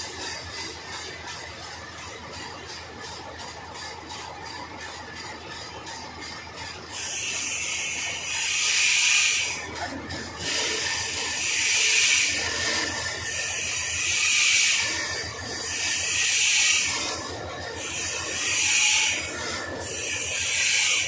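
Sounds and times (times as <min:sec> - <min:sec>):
saw cutting wood hissing: 0:06.9 - 0:21.0.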